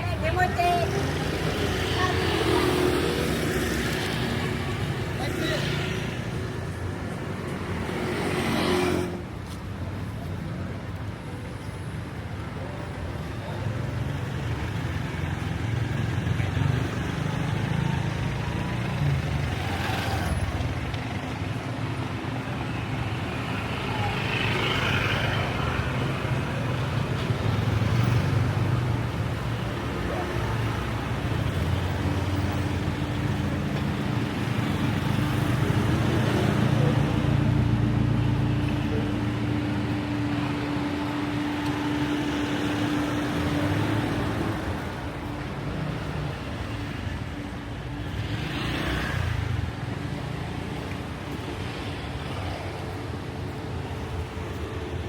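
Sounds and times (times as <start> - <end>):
vehicles passing: 0.0 - 55.0.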